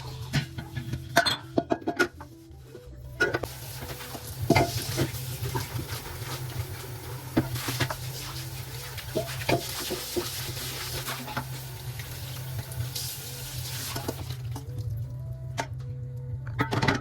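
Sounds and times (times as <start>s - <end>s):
tap water running into sink: 3.3s - 14.9s.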